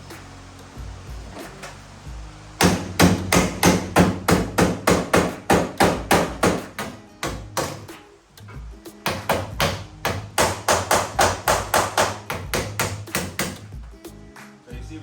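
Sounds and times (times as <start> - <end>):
hammer on sheet metal: 2.6 - 8.0, 9.0 - 13.7.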